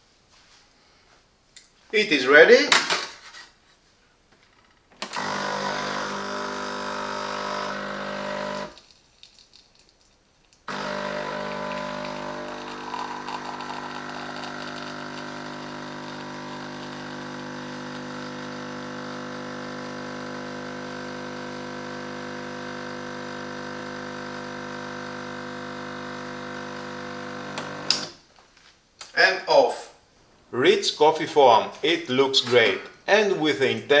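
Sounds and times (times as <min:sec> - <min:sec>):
espresso machine pump humming: 0:05.1 - 0:08.8, 0:10.7 - 0:28.1.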